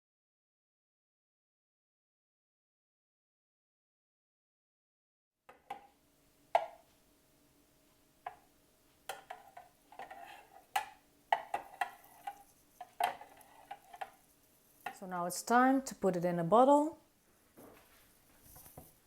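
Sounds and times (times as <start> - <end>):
spoon knocking against container: 9.1 - 14.2.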